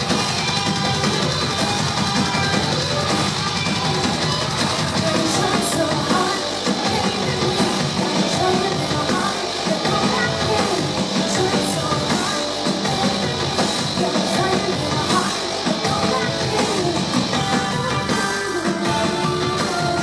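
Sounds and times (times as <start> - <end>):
distorted guitar: 0.0 - 20.0
heavy drum beat: 0.0 - 20.0
woman singing: 4.7 - 20.0.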